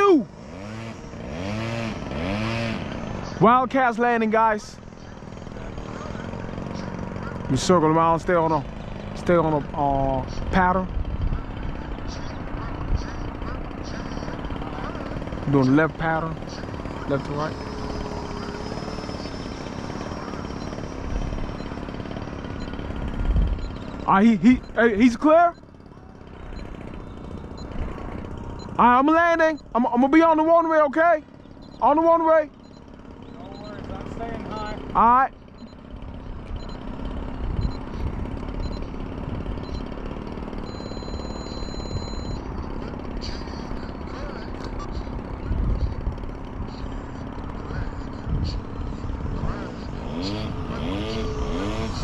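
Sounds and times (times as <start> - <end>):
model airplane engine whining: 0.0 - 52.0.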